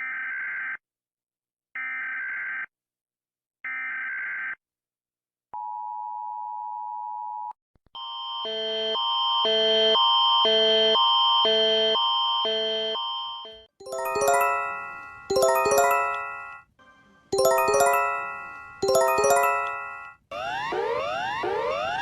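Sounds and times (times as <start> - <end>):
electronic chime switching pitches: 13.8 - 16.6, 17.4 - 20.1.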